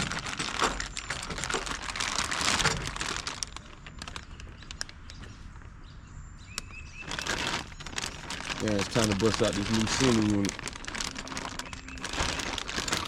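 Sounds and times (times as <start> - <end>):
rustling and crinkling material: 0.0 - 5.6, 6.7 - 13.0
bird chirp: 3.6 - 10.3, 11.2 - 12.7.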